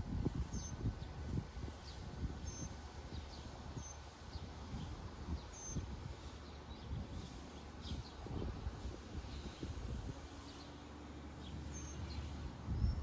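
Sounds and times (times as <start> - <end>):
small birds chirping: 0.4 - 13.0.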